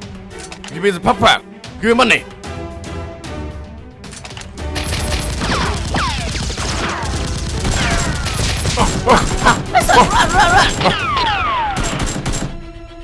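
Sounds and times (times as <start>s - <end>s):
rapid gunfire: 4.6s - 9.8s, 10.7s - 12.6s.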